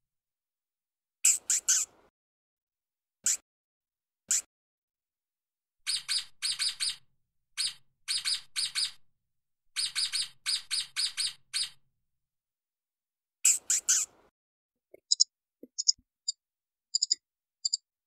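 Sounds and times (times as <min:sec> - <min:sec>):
stoat chirping: 0:15.0 - 0:16.0, 0:16.9 - 0:17.8.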